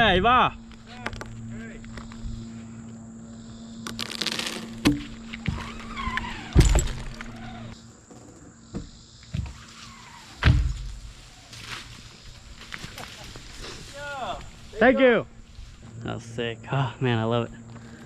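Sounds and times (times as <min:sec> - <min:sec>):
heavy thuds of log landing: 0:04.7 - 0:07.8, 0:10.4 - 0:11.9.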